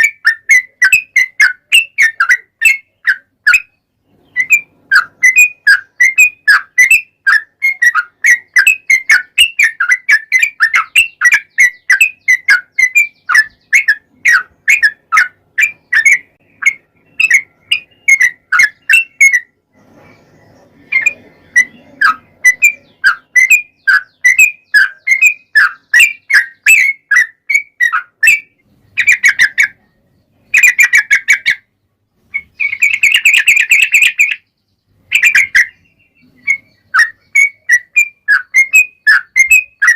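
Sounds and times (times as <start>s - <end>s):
bird singing chattering notes: 0.0s - 39.9s.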